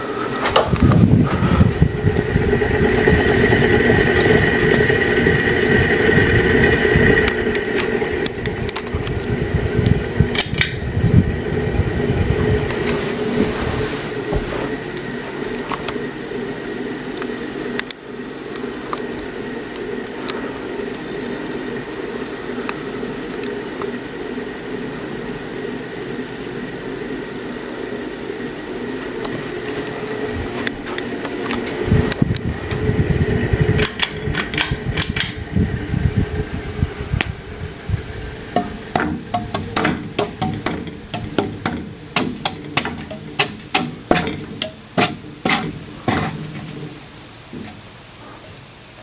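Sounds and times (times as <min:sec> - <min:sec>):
faint high whine: 0:00.0 - 0:34.6
ceiling fan humming: 0:00.0 - 0:49.0.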